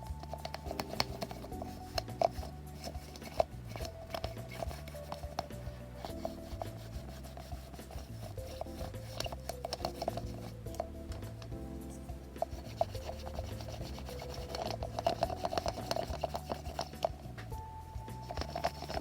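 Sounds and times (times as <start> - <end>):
background music: 0.0 - 19.0
defuzzing tool rasping on fabric: 0.2 - 10.6, 12.4 - 17.1.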